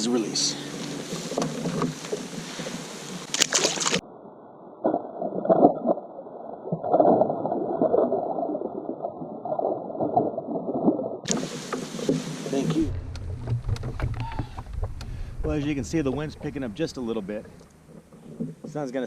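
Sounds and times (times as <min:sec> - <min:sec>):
water splashing: 0:00.5 - 0:04.0, 0:04.8 - 0:19.0
muffled underwater gurgling and sloshing: 0:04.8 - 0:19.0.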